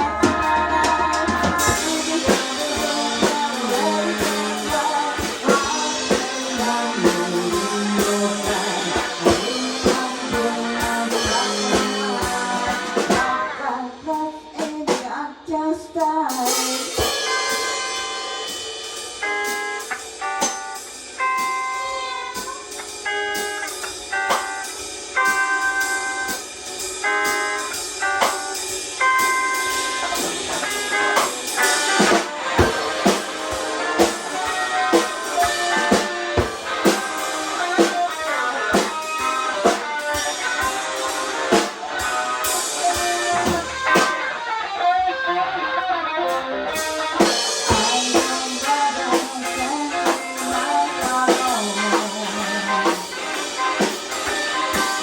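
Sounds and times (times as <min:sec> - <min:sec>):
electric guitar lead notes: 0:00.0 - 0:14.6, 0:16.4 - 0:55.0
rockabilly band playing: 0:00.0 - 0:15.1, 0:16.0 - 0:55.0.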